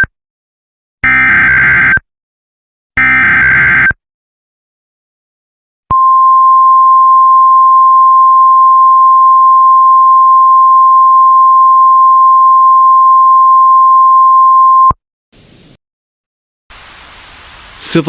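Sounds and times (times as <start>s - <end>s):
faint burst of static: 15.4s - 15.8s, 16.7s - 18.0s.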